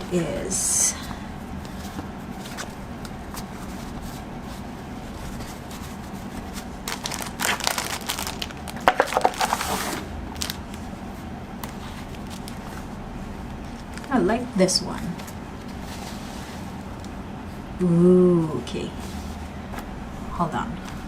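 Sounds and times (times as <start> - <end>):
packaging crinkling and rustling: 5.4 - 10.9, 11.6 - 13.0.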